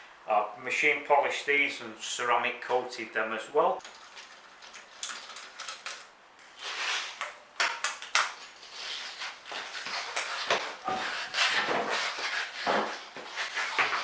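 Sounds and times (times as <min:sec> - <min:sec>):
hard parts clicking and clattering: 0:03.8 - 0:06.2.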